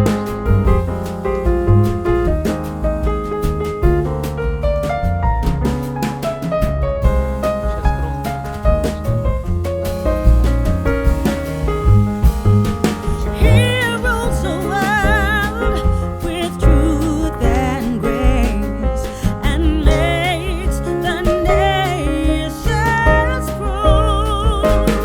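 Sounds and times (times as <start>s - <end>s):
heavy bass beat: 0.0s - 25.0s
piano-like accompaniment: 0.0s - 25.0s
person singing with vibrato: 13.3s - 25.0s.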